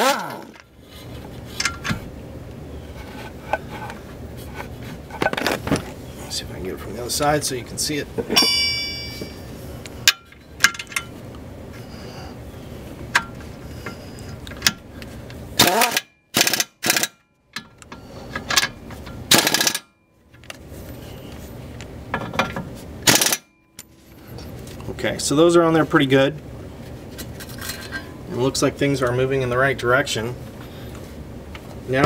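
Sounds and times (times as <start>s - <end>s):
impact wrench whine: 0.0s - 0.7s, 8.4s - 9.5s, 15.6s - 20.0s, 23.0s - 24.2s
impact wrench hammering: 8.4s - 9.5s, 15.6s - 17.8s, 19.3s - 19.9s, 23.1s - 23.5s.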